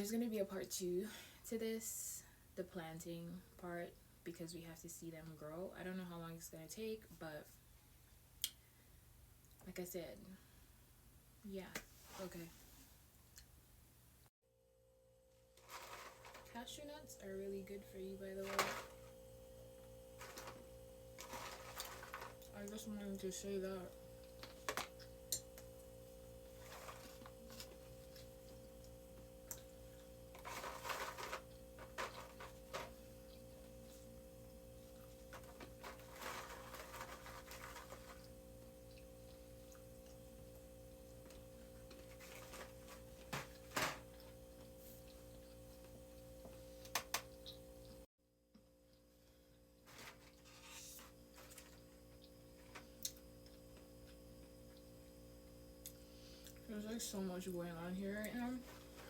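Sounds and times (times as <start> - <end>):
low electrical hum: 0.0 - 59.0
crackly handling noises: 15.5 - 16.8, 18.3 - 19.2, 19.8 - 48.0, 48.9 - 54.8, 58.2 - 59.0
small clicks and rustles: 35.0 - 38.3.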